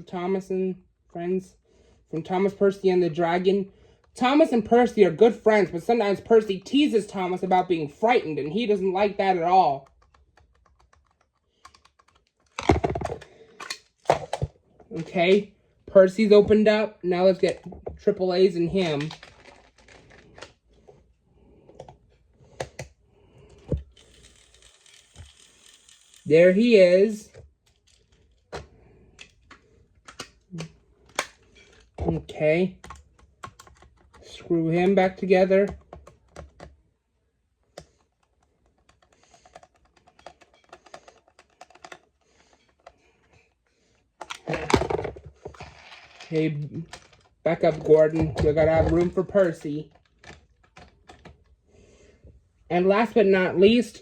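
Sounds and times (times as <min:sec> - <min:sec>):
screwdriver clicking on plastic: 0:23.6 - 0:26.3, 0:37.7 - 0:43.0.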